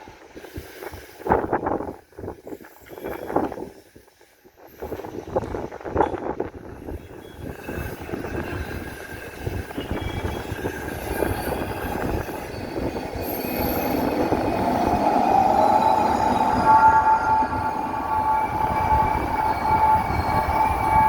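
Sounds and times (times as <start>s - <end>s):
high wheel squealing: 9.8s - 21.0s.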